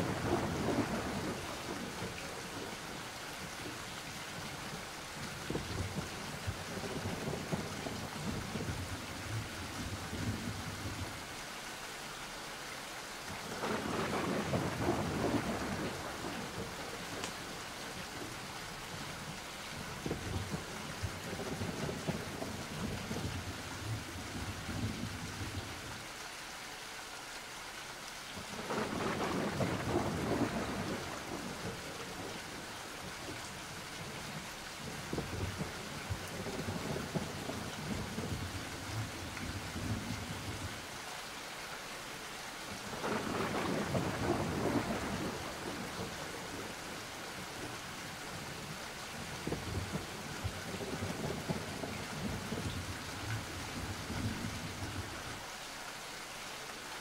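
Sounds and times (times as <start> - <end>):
rolling thunder: 0.0 - 2.7, 13.6 - 17.3, 28.6 - 32.3, 42.8 - 55.2
steady rain falling: 0.0 - 57.0.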